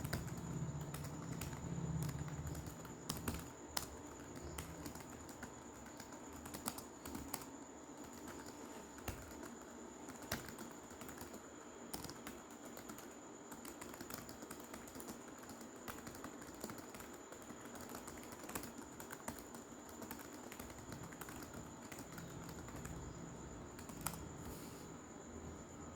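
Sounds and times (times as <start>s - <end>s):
rapid typing on keyboard: 0.0s - 24.6s.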